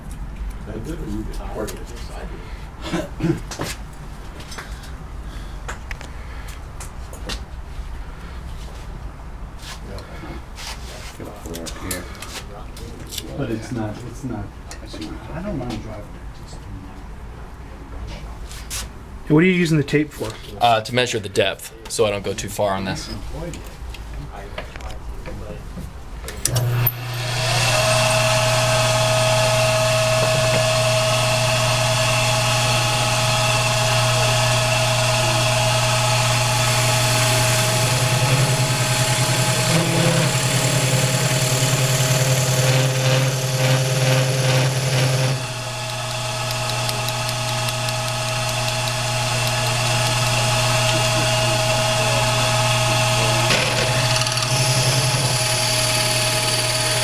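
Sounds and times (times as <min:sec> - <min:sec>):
drill bit boring wood: 0:26.4 - 0:57.0
lathe motor humming: 0:26.5 - 0:57.0.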